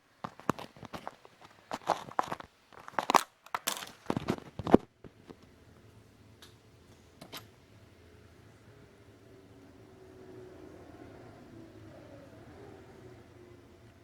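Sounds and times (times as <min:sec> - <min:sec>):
handling noise crackling and rustling: 0:00.0 - 0:05.6
faint low hum: 0:00.0 - 0:14.0.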